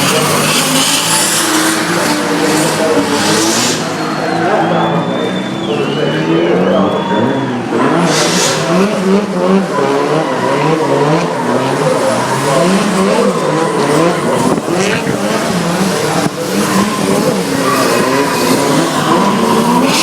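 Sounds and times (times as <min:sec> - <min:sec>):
car engine revving: 0:00.0 - 0:20.0
tyre squeal: 0:16.3 - 0:20.0.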